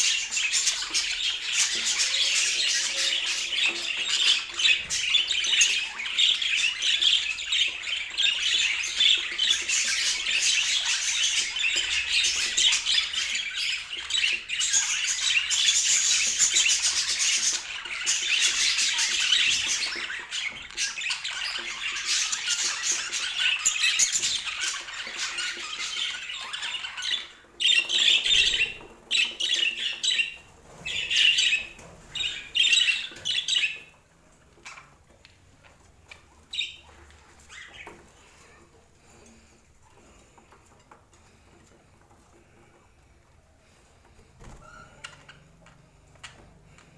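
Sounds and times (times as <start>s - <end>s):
budgerigars chattering: 0.0s - 33.9s.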